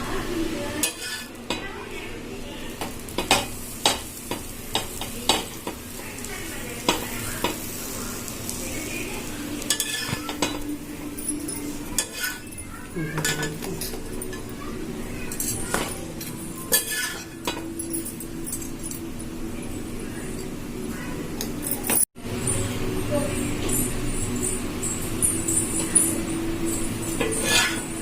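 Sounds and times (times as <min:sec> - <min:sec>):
sandwich sizzling in pan: 0:00.0 - 0:21.4, 0:22.2 - 0:28.0
spatula scraping pan: 0:00.8 - 0:01.6, 0:09.6 - 0:10.7, 0:11.6 - 0:14.5, 0:15.4 - 0:17.6, 0:27.2 - 0:28.0.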